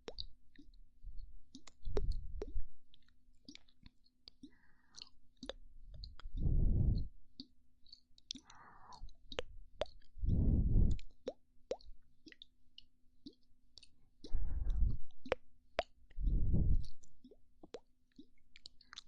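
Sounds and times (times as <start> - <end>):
wet tongue and lip clicks: 0.0 - 19.0
breaths into microphone: 6.0 - 7.1, 8.4 - 9.1, 10.2 - 11.0, 14.3 - 15.1, 16.2 - 17.0.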